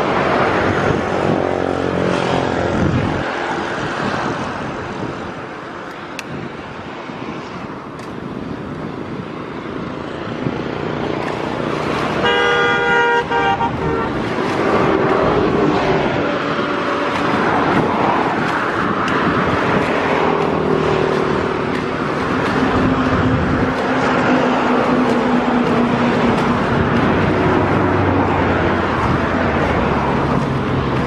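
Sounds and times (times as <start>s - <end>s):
loud steady rushing noise: 0.0s - 31.0s
vehicle horn honking: 12.2s - 14.3s.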